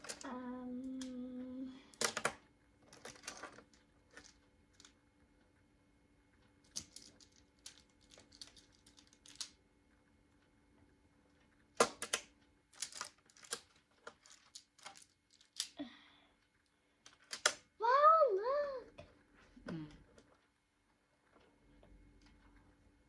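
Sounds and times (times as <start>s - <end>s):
plastic tiles clicking together: 6.6s - 9.6s, 11.8s - 15.8s.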